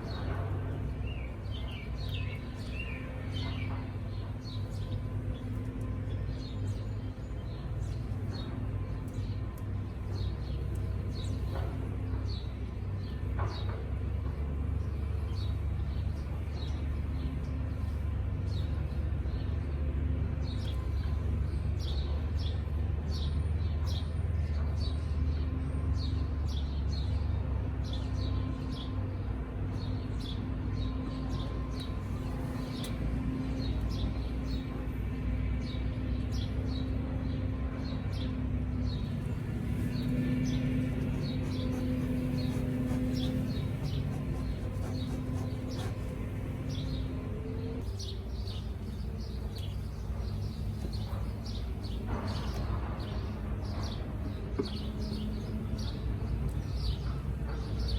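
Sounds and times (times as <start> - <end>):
small birds chirping: 0.0 - 19.7, 29.7 - 38.3, 38.9 - 57.9
honeybees humming: 38.9 - 57.4.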